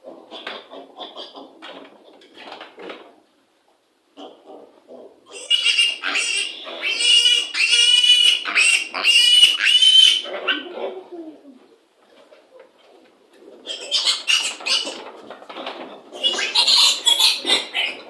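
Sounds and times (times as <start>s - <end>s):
piglets squealing: 5.3s - 10.6s, 13.7s - 15.0s, 16.2s - 18.0s.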